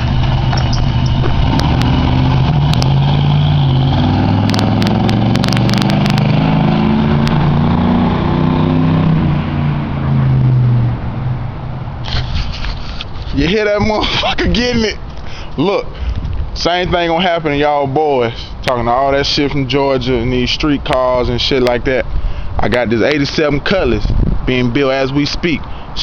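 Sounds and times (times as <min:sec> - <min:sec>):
car engine accelerating: 0:00.0 - 0:12.0.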